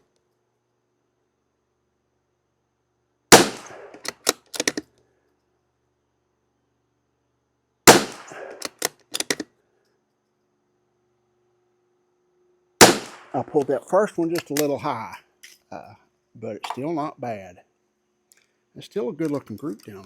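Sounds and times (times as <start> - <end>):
rifle shots: 3.3 - 4.8, 7.9 - 9.4, 12.8 - 13.5
rifle bolt metallic clicks: 3.4 - 4.9, 7.9 - 9.4, 14.4 - 14.7.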